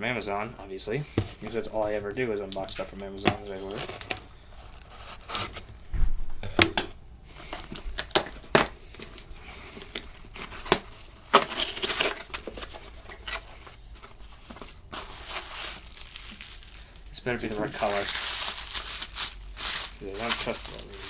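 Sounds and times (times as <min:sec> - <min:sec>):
packaging tearing and rustling: 0:01.2 - 0:05.9, 0:07.3 - 0:21.0
sharp clicks and knocks: 0:05.9 - 0:07.0.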